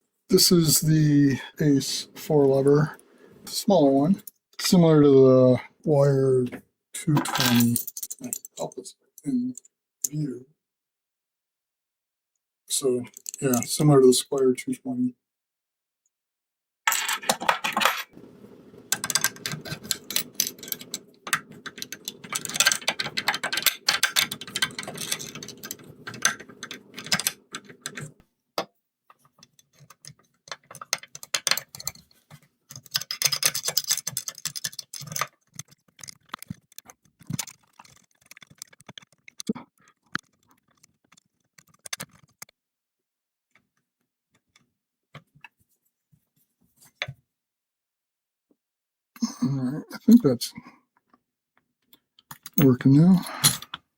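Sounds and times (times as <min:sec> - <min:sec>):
lock picks clicking in padlock: 0:32.7 - 0:37.5.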